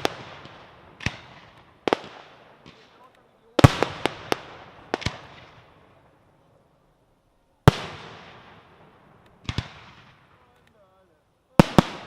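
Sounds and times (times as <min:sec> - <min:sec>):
firework shells bursting: 0:00.0 - 0:06.1.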